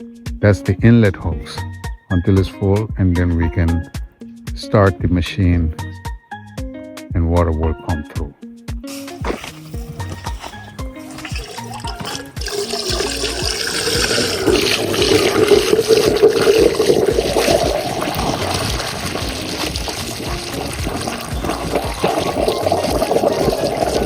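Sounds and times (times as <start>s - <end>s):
background music with stepped notes: 0.0s - 24.0s
water pouring into pump port: 10.4s - 24.0s.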